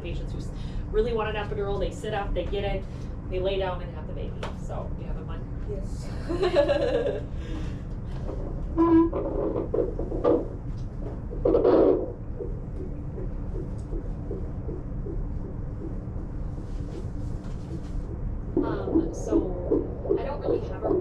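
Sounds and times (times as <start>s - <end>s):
fetal heartbeat on doppler monitor: 0.0s - 21.0s
steady hum: 0.0s - 21.0s
knocks and rustles: 8.1s - 18.3s.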